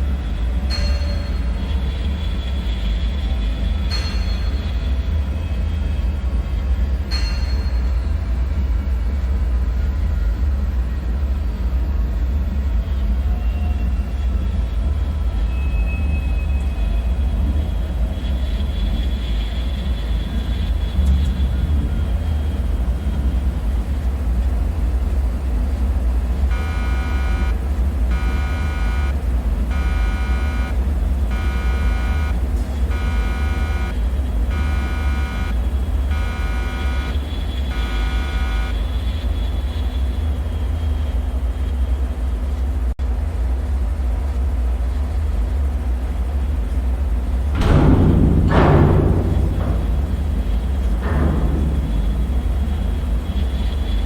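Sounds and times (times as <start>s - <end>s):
pulsing alarm buzzer: 26.5s - 39.1s
deep rumbling drone: 47.1s - 54.0s
loud hit with ringing tail: 47.6s - 54.0s.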